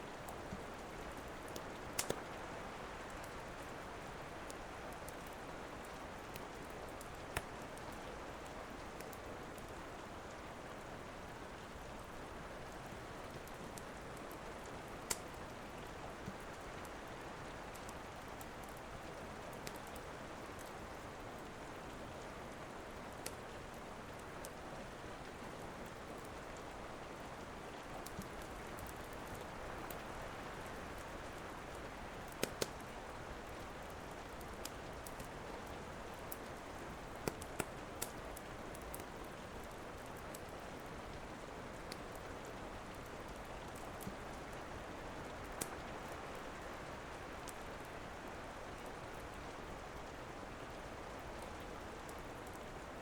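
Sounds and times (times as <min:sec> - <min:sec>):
steady rain: 0:00.0 - 0:53.0
wood fire crackling and popping: 0:01.3 - 0:02.3, 0:04.6 - 0:08.0, 0:13.3 - 0:16.7, 0:27.9 - 0:30.0, 0:30.7 - 0:40.9, 0:45.4 - 0:45.8.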